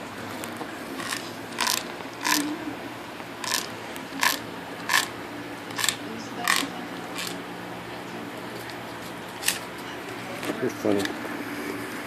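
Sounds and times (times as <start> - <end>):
wooden stick being chewed: 1.0 - 2.4, 3.4 - 5.1.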